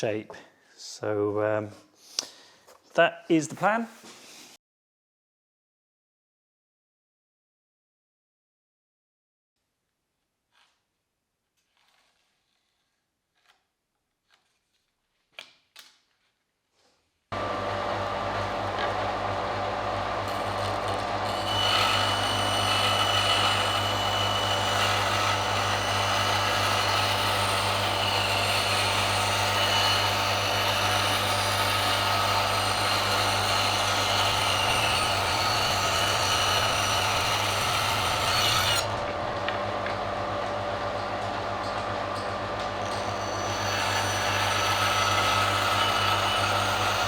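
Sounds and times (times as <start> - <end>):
power tool whining on wood: 17.4 - 40.0, 42.6 - 47.0
steady machine hum: 17.4 - 47.0.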